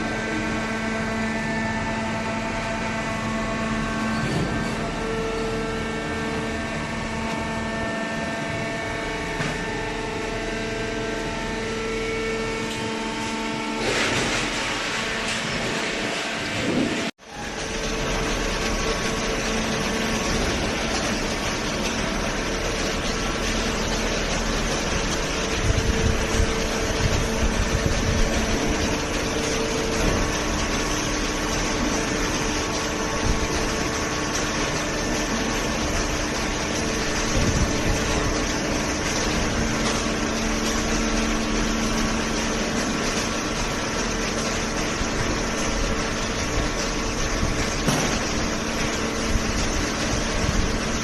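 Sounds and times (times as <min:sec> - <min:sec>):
hydraulic motor and pump humming: 0:00.0 - 0:51.0.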